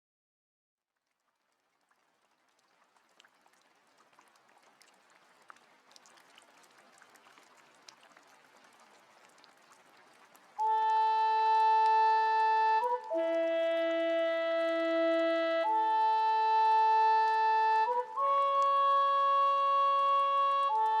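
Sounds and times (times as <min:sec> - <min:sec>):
rain hiss with drop ticks: 0:03.2 - 0:21.0
held wind instrument note: 0:10.6 - 0:21.0.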